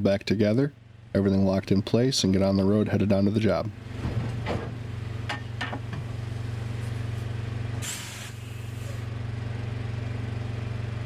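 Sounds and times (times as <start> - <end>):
diesel engine idling: 6.0 - 11.0
hiss: 7.8 - 9.1.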